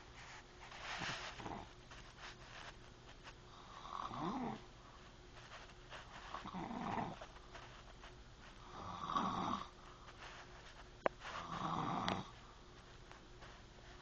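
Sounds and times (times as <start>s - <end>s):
person snoring: 3.6s - 4.6s, 8.6s - 9.7s, 11.4s - 12.4s.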